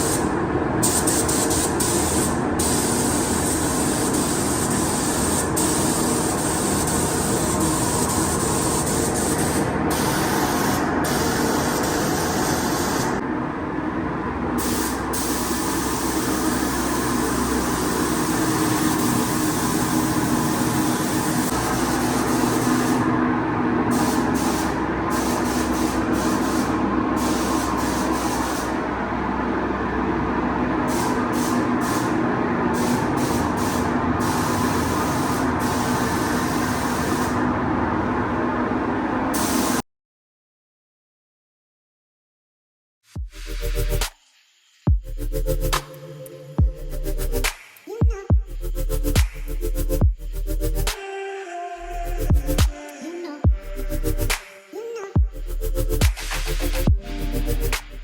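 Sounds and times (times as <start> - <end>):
spray gun hissing: 0.0 - 13.2, 14.6 - 29.3, 30.6 - 37.4, 39.4 - 39.8
fans humming: 0.0 - 39.8.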